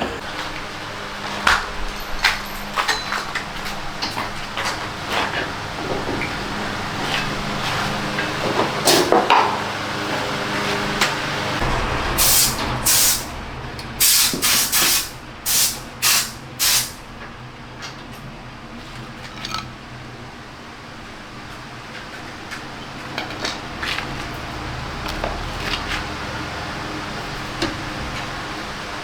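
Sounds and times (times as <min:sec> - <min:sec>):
low machine hum: 0:09.8 - 0:29.0
spray nozzle hissing: 0:12.2 - 0:13.3, 0:14.0 - 0:17.0.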